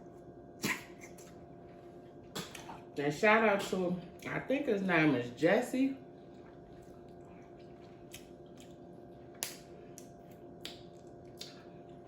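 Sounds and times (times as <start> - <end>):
faint steady hum: 0.0 - 12.0
wet mouth clicks and smacks: 8.1 - 11.6.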